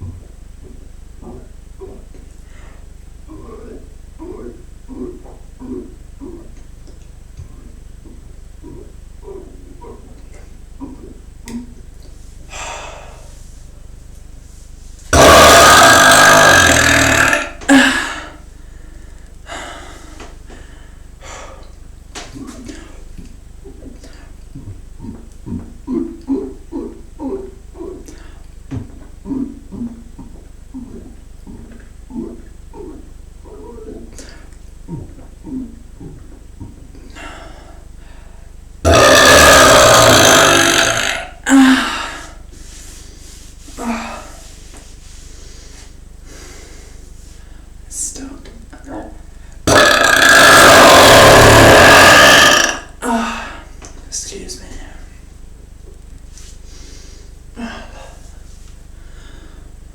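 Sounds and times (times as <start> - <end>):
person belching: 15.2 - 18.4, 38.9 - 41.9, 49.7 - 53.4.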